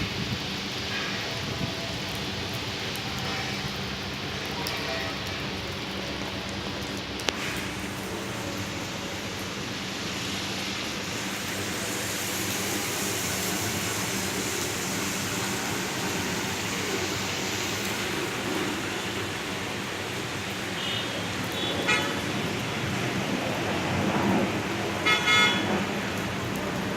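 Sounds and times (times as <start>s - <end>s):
heavy rain: 0.0s - 26.9s.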